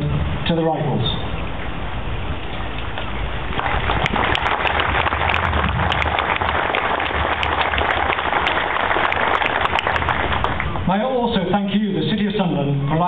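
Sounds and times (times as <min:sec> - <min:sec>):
crowd applauding: 0:03.4 - 0:10.8.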